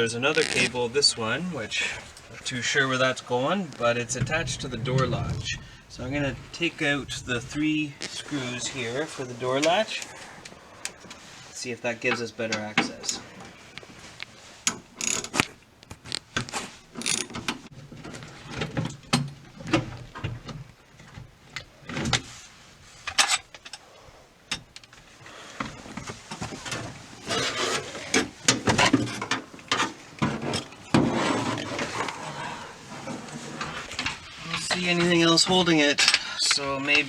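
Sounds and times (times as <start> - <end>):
metal rasping: 1.7 - 8.6.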